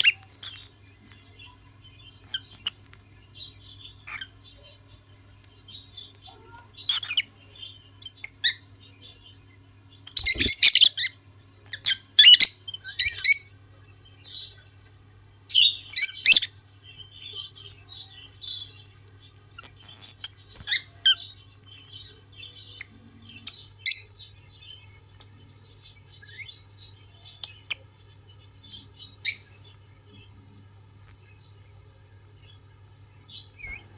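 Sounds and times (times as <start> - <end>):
soft twittering chatter: 0.0 - 33.9
lovebirds squawking: 5.8 - 7.4, 10.2 - 11.1.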